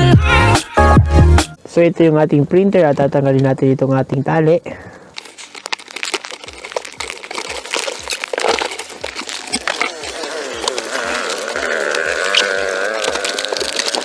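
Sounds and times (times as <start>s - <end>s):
crinkling handling noise: 4.9s - 14.0s.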